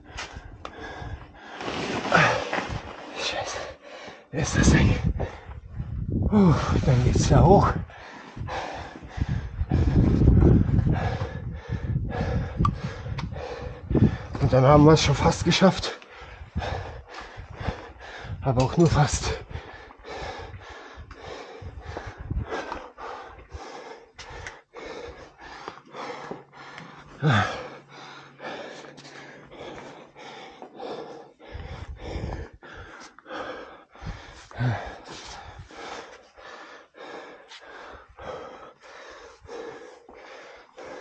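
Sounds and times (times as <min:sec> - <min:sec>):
man breathing hard: 0:00.0 - 0:41.0
man gasping: 0:06.2 - 0:14.4, 0:19.3 - 0:41.0.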